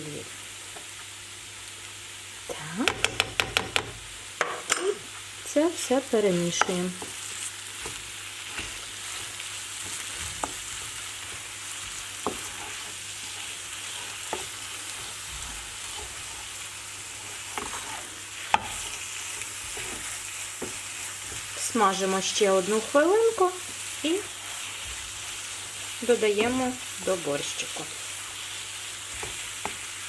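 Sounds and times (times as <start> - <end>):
vegetables sizzling in a pan: 0.0 - 30.0
utensil knocking against pan: 2.9 - 4.8.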